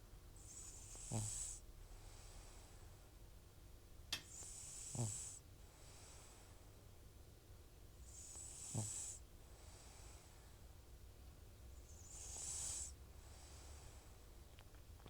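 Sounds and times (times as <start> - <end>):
cat snoring: 0.4 - 2.7, 4.3 - 6.4, 8.0 - 10.3, 11.8 - 14.1
small click: 4.1 - 4.3.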